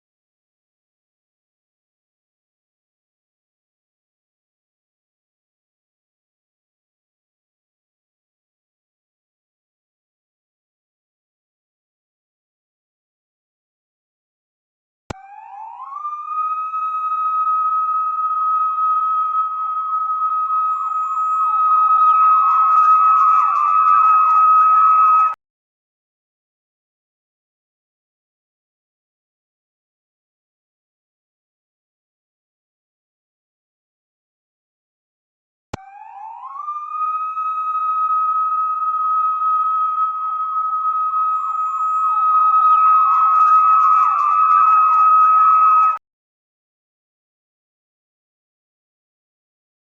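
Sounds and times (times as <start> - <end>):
siren click: 15.1 - 25.4, 35.8 - 46.0
siren steady tone: 15.1 - 25.4, 35.8 - 46.0.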